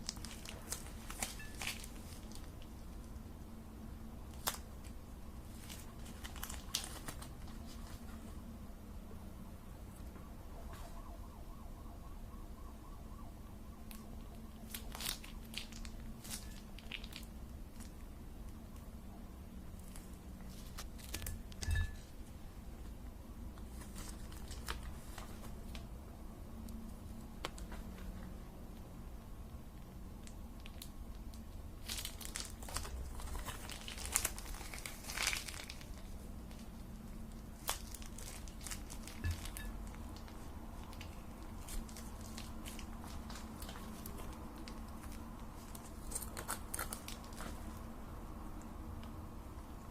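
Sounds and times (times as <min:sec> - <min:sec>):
crinkling handling noises: 0:00.0 - 0:08.7, 0:13.1 - 0:49.9
sharp crisp crunches: 0:31.8 - 0:36.7, 0:41.0 - 0:47.8.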